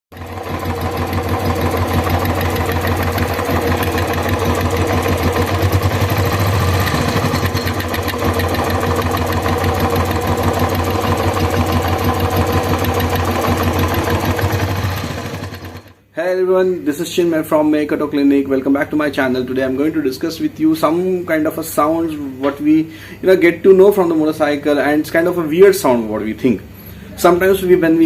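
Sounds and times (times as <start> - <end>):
motorcycle engine idling with clatter: 0.1 - 16.0.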